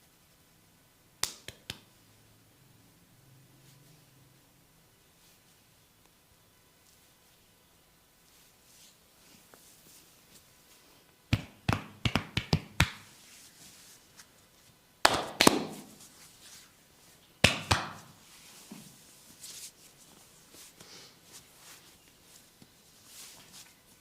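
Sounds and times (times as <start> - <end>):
hands slapping head: 1.2 - 1.9, 11.3 - 13.1, 15.0 - 16.0, 17.4 - 18.2.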